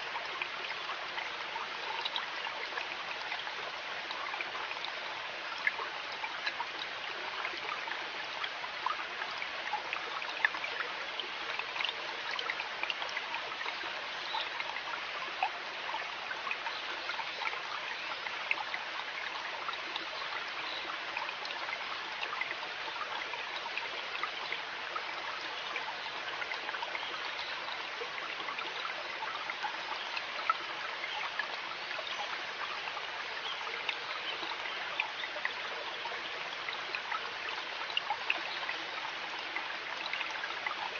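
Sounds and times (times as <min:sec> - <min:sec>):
river water running: 0:00.0 - 0:40.9.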